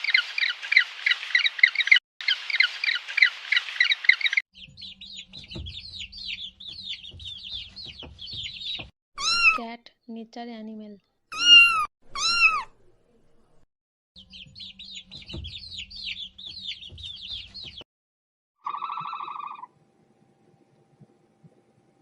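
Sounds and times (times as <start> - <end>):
rapid high chirping calls: 0.0 - 9.6, 11.3 - 12.7, 18.6 - 19.7
cat meowing: 11.3 - 12.7.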